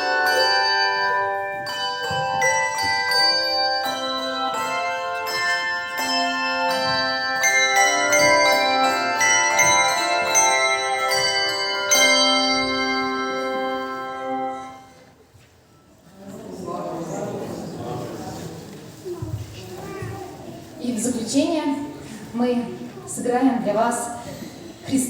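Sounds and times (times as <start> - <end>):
tuned bells playing a melody: 0.0 - 15.1.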